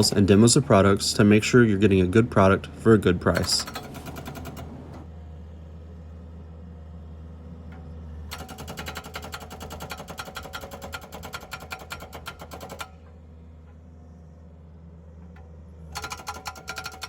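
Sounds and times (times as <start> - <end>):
engine humming: 0.0 - 17.0
jackhammer rattling: 3.3 - 5.0, 8.3 - 13.1, 15.9 - 17.0.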